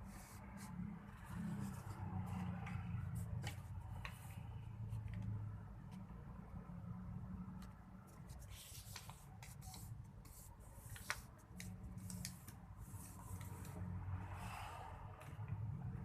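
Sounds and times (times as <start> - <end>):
paper being folded and creased: 8.2 - 13.8.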